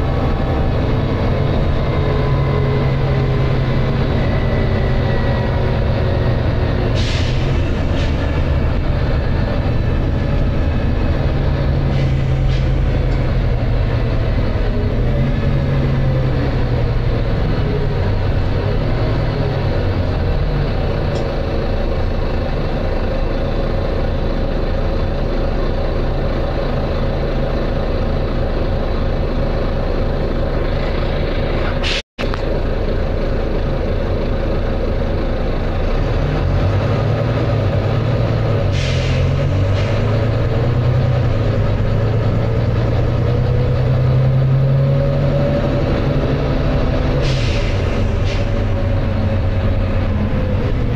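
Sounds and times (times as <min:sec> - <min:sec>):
bus diesel engine working hard: 0:00.0 - 0:50.9
drivetrain whine: 0:00.0 - 0:50.9.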